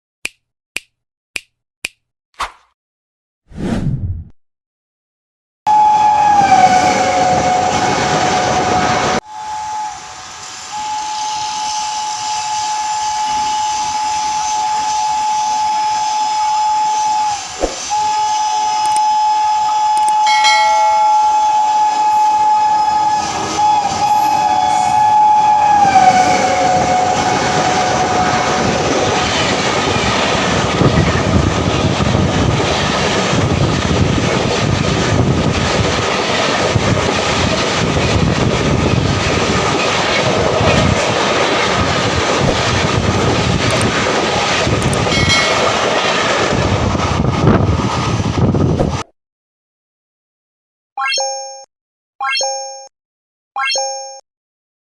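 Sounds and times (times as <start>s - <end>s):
locomotive horn: 5.7s - 29.3s
train wheels clattering on rails: 28.5s - 46.7s.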